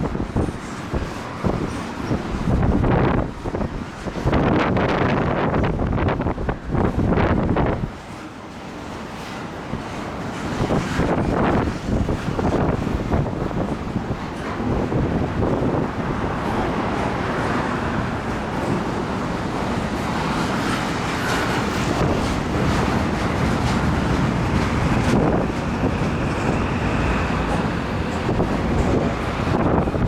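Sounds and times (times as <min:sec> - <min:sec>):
freight train cars rolling: 0:00.0 - 0:30.0
wind buffeting microphone: 0:00.0 - 0:30.0.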